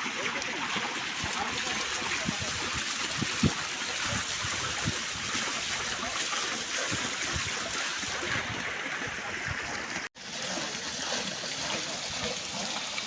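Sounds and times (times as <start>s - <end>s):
running water rushing: 0.0s - 13.0s.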